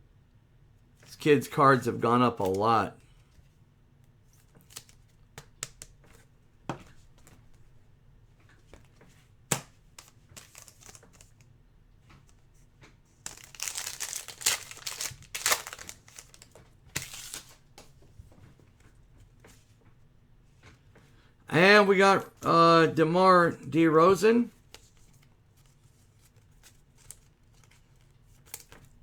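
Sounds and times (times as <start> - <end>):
cards ticking when handled: 1.8 - 2.8, 13.3 - 17.6
wrapper crinkling and tearing: 10.4 - 11.2, 13.3 - 17.6.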